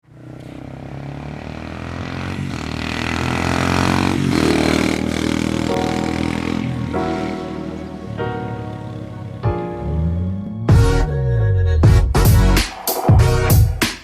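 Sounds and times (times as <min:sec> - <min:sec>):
motorcycle engine accelerating: 0:00.0 - 0:11.1.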